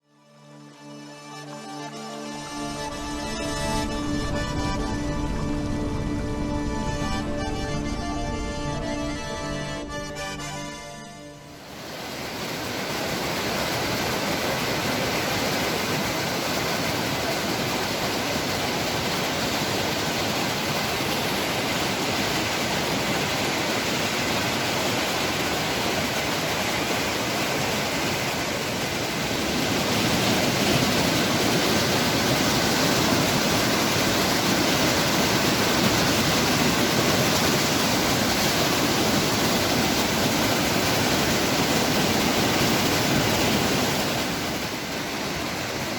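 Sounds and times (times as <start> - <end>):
waterfall: 11.5 - 45.9.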